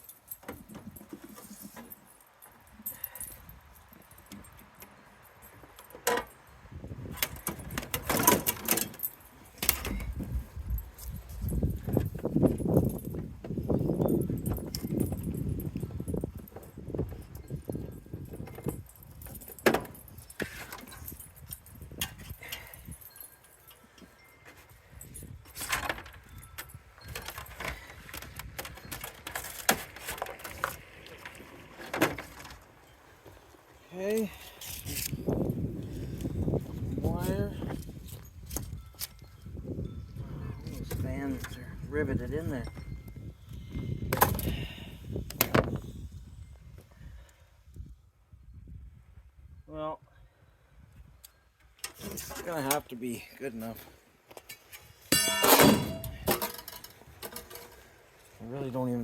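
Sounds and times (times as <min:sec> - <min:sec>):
metal parts clanking and rattling: 0:00.0 - 0:33.0, 0:34.1 - 0:36.4, 0:54.5 - 0:58.0.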